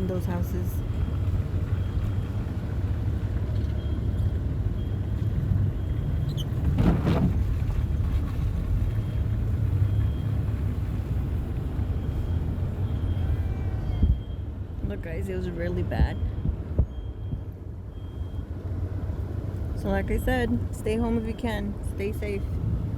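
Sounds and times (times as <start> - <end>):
car road and engine rumble: 0.0 - 22.9.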